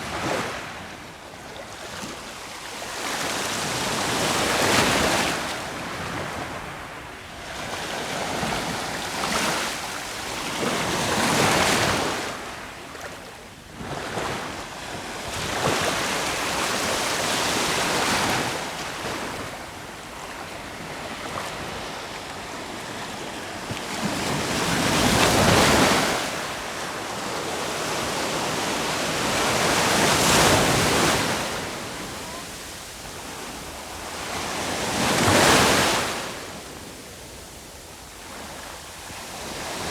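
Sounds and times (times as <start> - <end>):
sea waves breaking on shore: 20.2 - 39.9.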